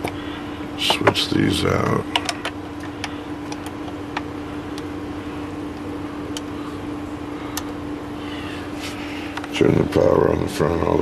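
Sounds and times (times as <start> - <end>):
electrical hum: 0.0 - 11.0.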